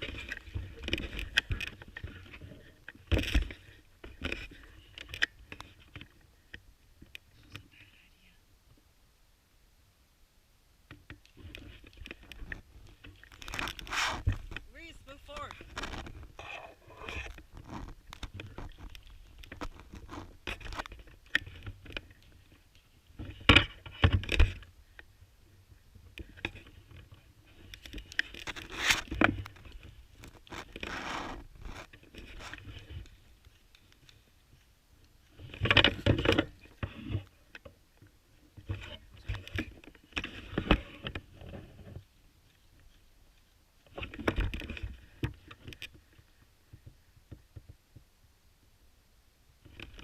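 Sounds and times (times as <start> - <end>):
scraping and crunching handling noise: 0.0 - 7.2, 10.9 - 24.7, 26.2 - 34.6.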